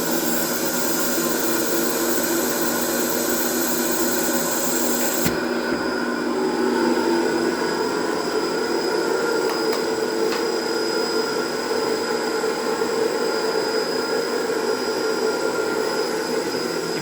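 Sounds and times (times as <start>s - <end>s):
sanding machine hum and whine: 0.0s - 17.0s.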